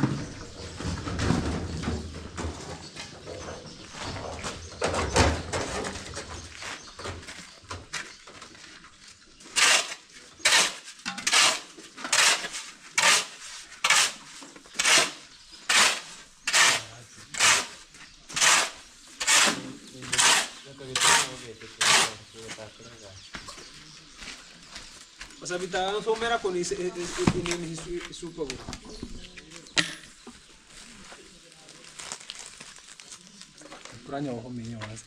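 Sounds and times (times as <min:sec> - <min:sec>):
knocks and clatter: 0:00.0 - 0:08.4.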